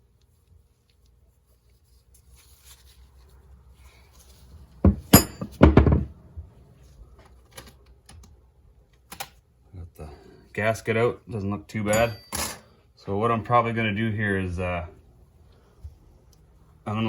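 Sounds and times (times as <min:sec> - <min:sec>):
loud metallic clanks and knocks: 0:04.9 - 0:06.1.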